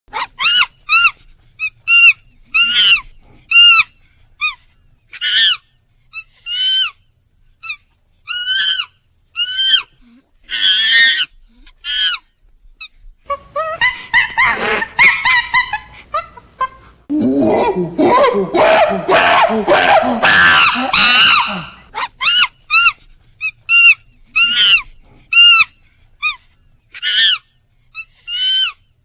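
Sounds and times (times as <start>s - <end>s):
monkey squealing and screeching: 0.1s - 4.6s, 5.2s - 5.6s, 7.6s - 9.9s, 10.5s - 12.2s, 18.5s - 26.4s, 27.0s - 27.4s, 28.0s - 28.8s.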